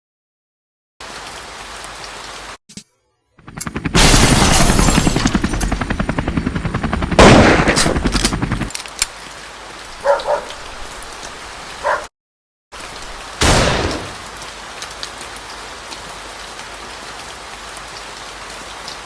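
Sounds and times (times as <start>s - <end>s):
automatic gunfire: 7.1s - 8.7s
loud blast: 13.4s - 14.2s.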